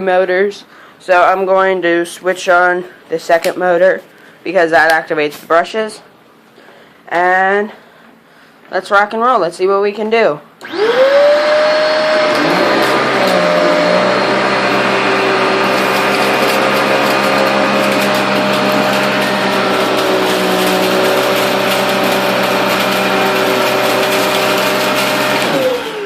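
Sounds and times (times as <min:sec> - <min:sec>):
vacuum brush-roll motor spinning: 0:10.6 - 0:26.0
vacuum suction motor whine: 0:10.6 - 0:26.0
rice grains rattling: 0:15.6 - 0:25.4.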